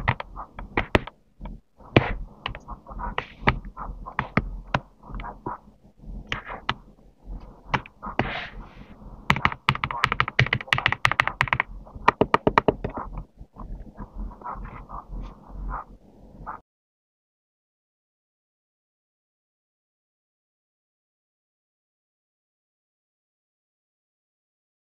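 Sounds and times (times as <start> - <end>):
mechanical keyboard keystrokes clacking: 9.3 - 13.2.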